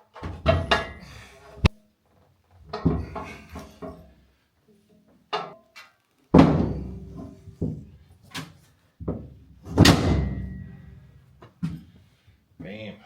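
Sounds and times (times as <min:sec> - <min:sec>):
heavy thuds and knocks: 0:02.6 - 0:04.0, 0:06.3 - 0:08.0, 0:09.0 - 0:10.8.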